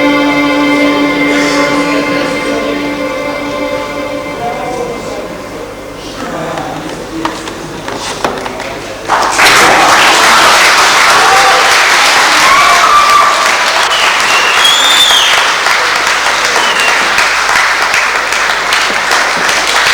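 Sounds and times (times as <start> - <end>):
audience applauding: 8.4 - 19.9.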